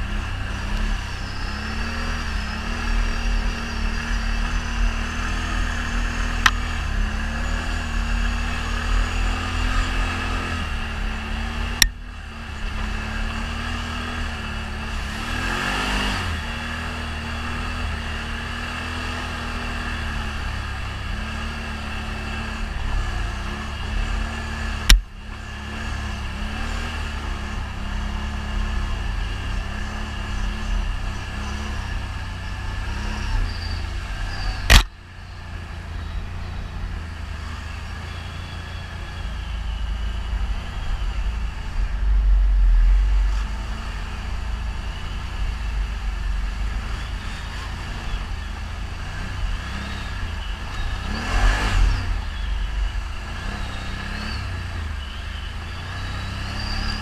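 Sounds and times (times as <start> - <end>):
atv engine rumbling: 0.0 - 57.0
sharp click: 34.6 - 35.0.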